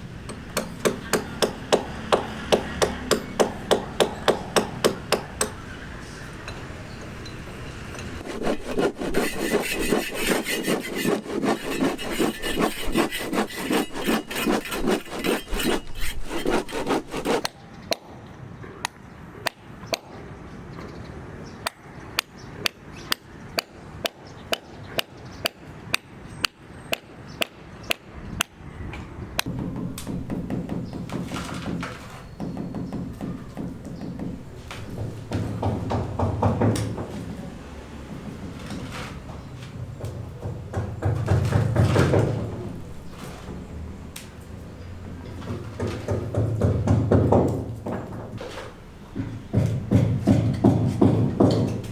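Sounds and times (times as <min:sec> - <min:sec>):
hand saw cutting wood: 0:08.2 - 0:17.5.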